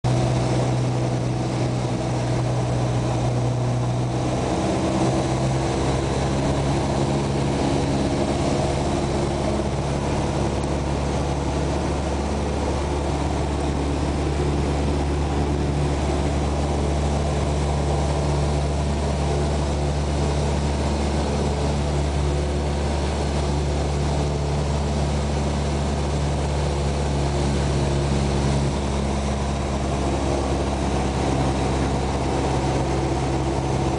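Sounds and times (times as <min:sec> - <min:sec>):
propeller plane engine drone: 0:00.0 - 0:33.9.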